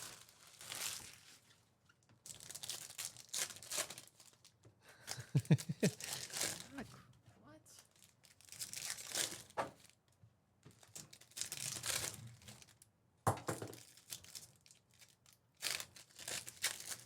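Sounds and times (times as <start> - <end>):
card pack wrappers torn and crinkled: 2.2 - 4.5, 7.9 - 10.0, 10.8 - 12.8, 13.7 - 17.0.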